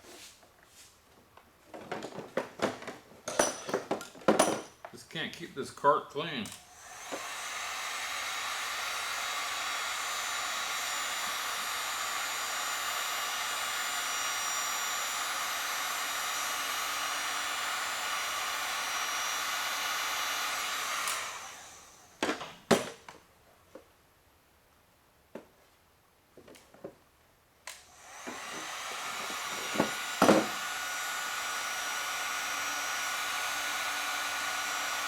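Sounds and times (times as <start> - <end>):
heat gun blowing whir: 5.8 - 22.5, 27.7 - 35.0.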